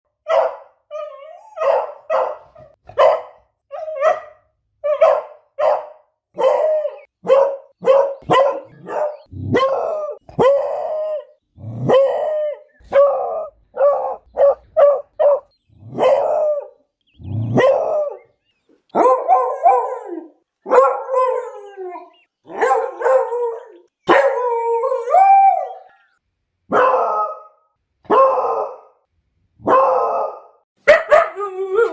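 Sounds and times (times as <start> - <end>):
dog barking: 0.2 - 16.7, 17.5 - 18.2, 18.9 - 21.4, 22.5 - 23.4, 24.1 - 24.4, 26.7 - 29.0, 29.6 - 31.9
dog baying and howling: 6.4 - 18.2, 18.9 - 26.1, 29.6 - 31.9.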